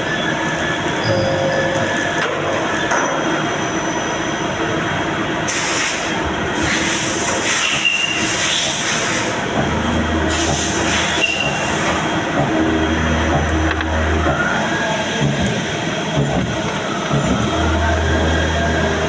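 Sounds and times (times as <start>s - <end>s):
brief high tones: 1.0s - 4.4s
machine running: 8.2s - 19.0s.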